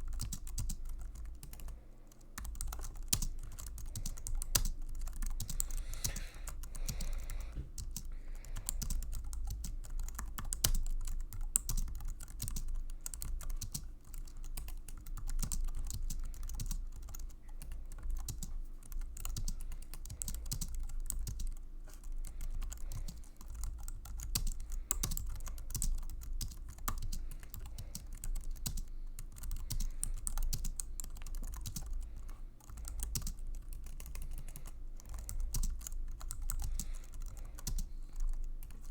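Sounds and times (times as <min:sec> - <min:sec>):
steady low hum: 0:00.0 - 0:38.9.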